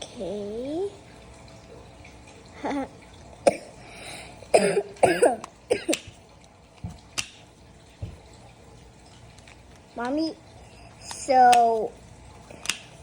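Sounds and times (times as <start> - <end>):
person coughing: 3.5 - 3.8, 4.5 - 6.0.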